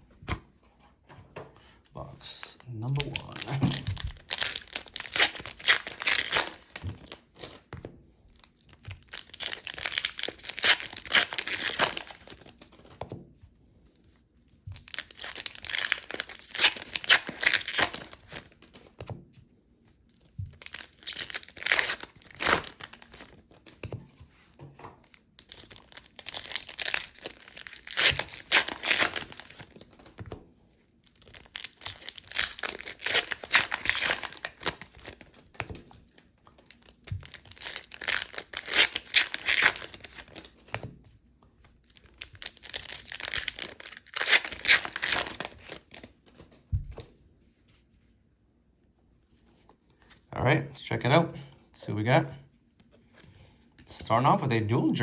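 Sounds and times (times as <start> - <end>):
plastic and foil wrapping crinkling: 2.0 - 7.7, 8.3 - 12.9, 14.8 - 18.9, 20.5 - 23.7, 25.1 - 30.2, 31.0 - 35.9, 36.6 - 40.7, 41.8 - 46.5.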